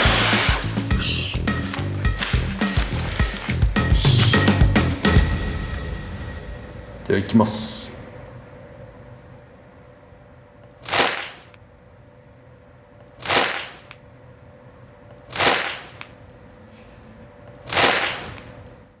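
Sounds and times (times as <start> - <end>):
short sharp noisy bursts: 0.0 - 1.4, 10.8 - 11.6, 13.2 - 14.0, 15.3 - 16.2, 17.7 - 18.5.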